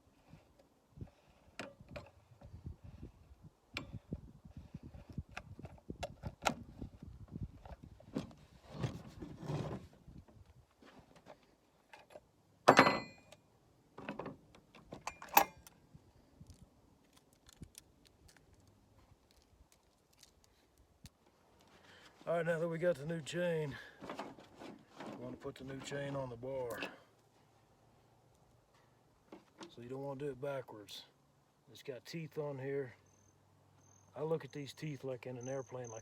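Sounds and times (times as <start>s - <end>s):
small metal clicks and rattles: 16.4s - 21.7s.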